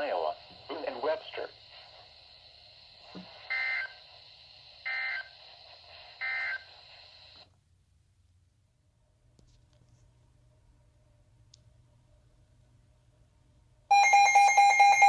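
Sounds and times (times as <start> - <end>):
radio speaker hiss: 0.0 - 7.5.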